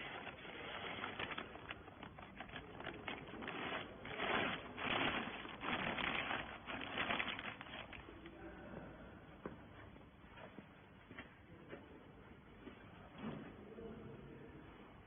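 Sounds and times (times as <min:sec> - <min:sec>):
clattering and rustling: 0:00.0 - 0:08.1.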